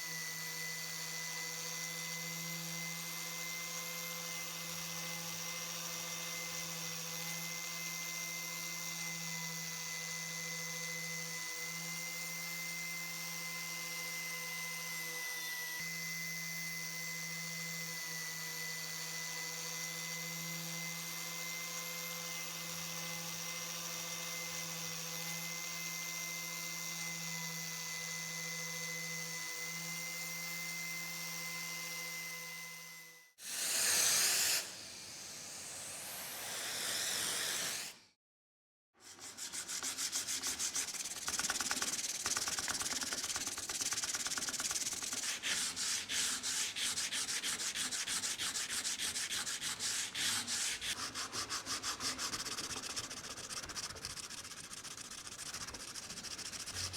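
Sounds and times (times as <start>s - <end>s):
small power tool motor running: 0.0s - 38.2s, 39.0s - 56.9s
sanding strokes: 33.4s - 38.1s, 39.0s - 56.9s.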